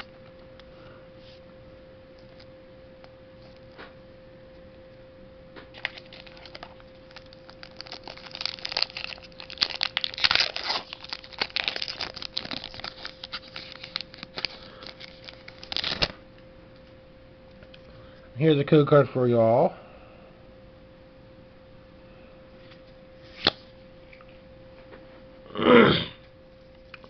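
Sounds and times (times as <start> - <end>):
faint electrical hum: 0.0 - 27.0
foil wrapper tearing and crinkling: 5.7 - 16.2.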